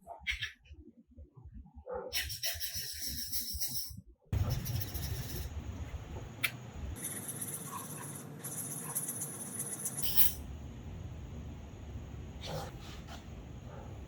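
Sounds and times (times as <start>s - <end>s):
chisel scraping on sharpening stone: 2.2s - 5.5s.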